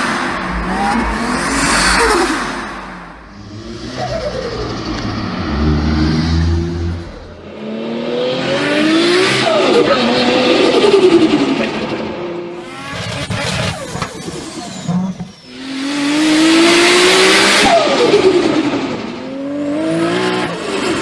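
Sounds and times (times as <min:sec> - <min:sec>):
turbocharged car engine revving: 0:00.0 - 0:21.0.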